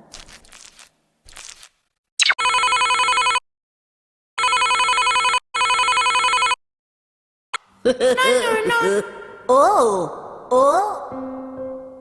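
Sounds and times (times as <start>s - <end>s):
electronic trilling ring tone: 2.2s - 3.4s, 4.4s - 6.6s.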